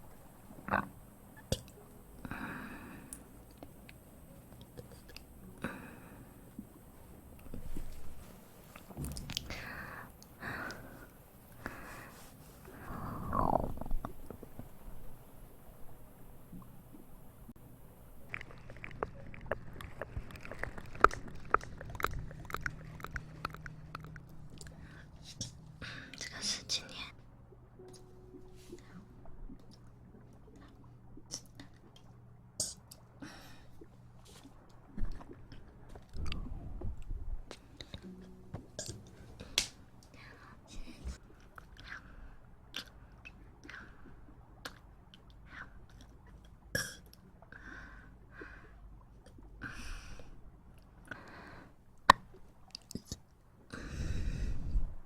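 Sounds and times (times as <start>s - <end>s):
low steady hum: 0.0s - 55.0s
wet mouth clicks and smacks: 18.3s - 25.6s.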